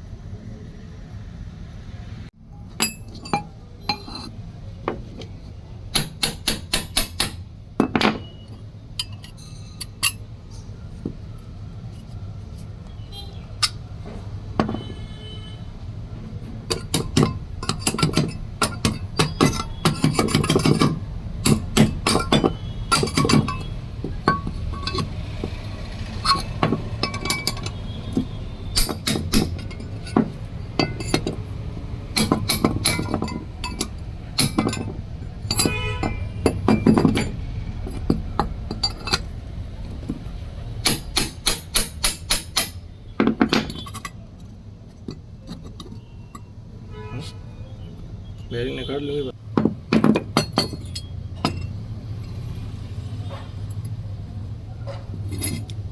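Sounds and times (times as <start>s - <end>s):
steel parts clinking together: 2.7s - 11.1s, 13.5s - 14.0s, 16.6s - 46.6s, 49.6s - 52.6s, 53.2s - 54.0s, 54.8s - 55.9s.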